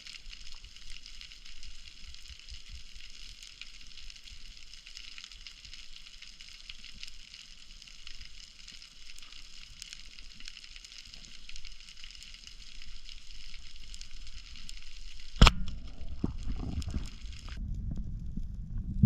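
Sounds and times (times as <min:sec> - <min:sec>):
snapping shrimp crackling underwater: 0:00.0 - 0:17.6
loud sharp crack: 0:15.2 - 0:16.2.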